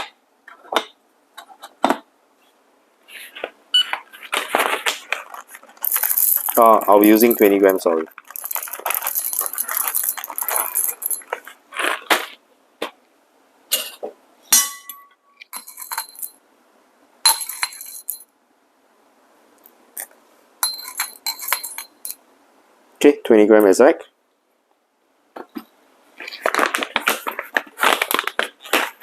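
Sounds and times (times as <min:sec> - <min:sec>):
coffee beans rattling and clinking: 0:05.1 - 0:12.0, 0:15.5 - 0:16.4, 0:17.3 - 0:18.2, 0:20.6 - 0:22.2
coffee beans pouring: 0:05.2 - 0:12.0.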